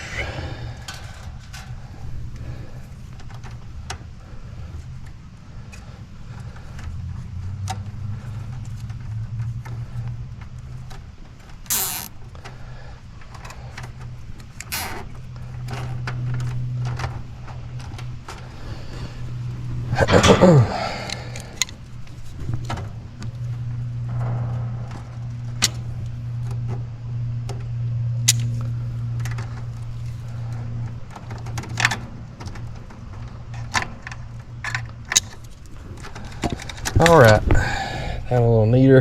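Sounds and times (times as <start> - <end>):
low hum: 0.0 - 39.0
tools clicking and rattling: 27.5 - 37.6.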